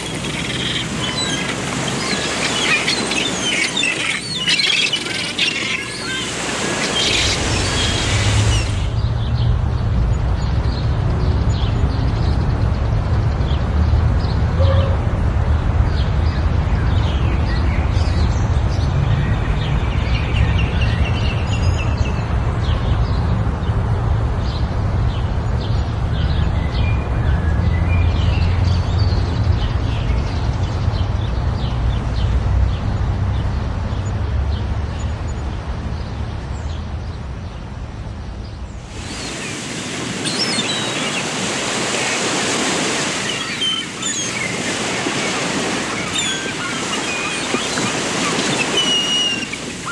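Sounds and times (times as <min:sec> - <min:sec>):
hissing surf-like noise: 0:00.0 - 0:09.0, 0:38.8 - 0:49.9
deep rumbling outdoor noise: 0:07.4 - 0:39.1
short bird chirps: 0:46.0 - 0:49.9.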